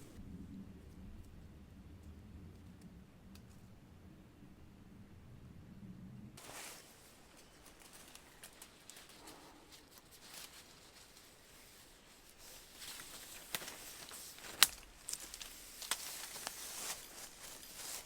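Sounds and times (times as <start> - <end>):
rustling: 6.4 - 18.0.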